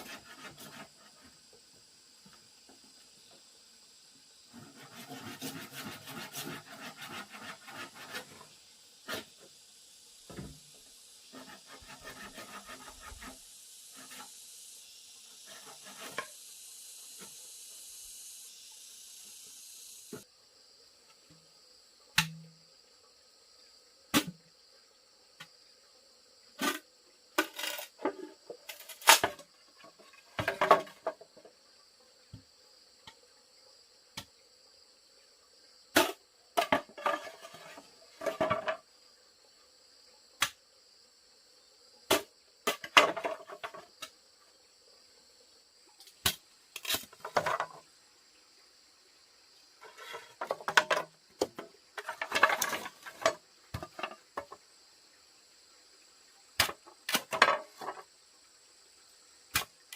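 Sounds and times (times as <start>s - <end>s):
rough scraping on wood: 0.0s - 1.4s, 4.5s - 8.5s, 11.3s - 14.4s, 15.4s - 16.4s, 36.6s - 38.8s, 49.8s - 51.0s, 52.0s - 54.6s.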